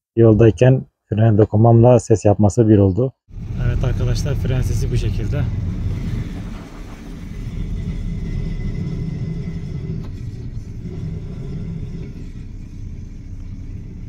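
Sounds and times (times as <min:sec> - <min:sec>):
car road rumble: 0:03.3 - 0:14.0.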